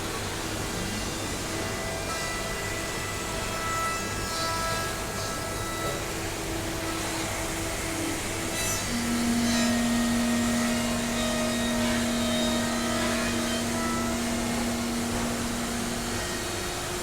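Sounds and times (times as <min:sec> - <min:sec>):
milling machine motor whine: 0:04.4 - 0:17.0.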